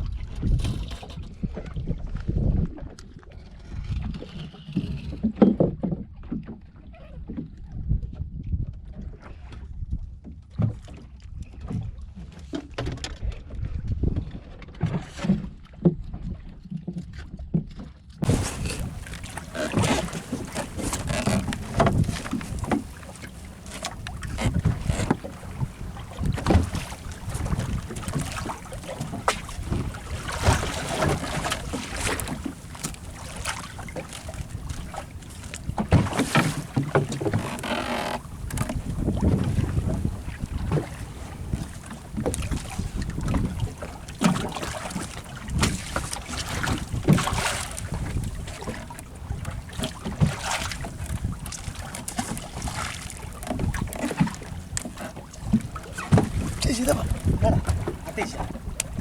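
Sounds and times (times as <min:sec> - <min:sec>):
wind buffeting microphone: 0:18.2 - 0:37.4, 0:38.2 - 0:59.0
low rumbling and knocks: 0:18.2 - 0:59.0.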